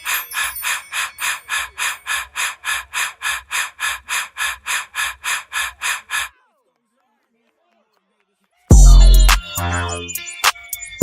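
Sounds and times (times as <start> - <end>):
hissing shaker pulses: 0.0 - 6.3.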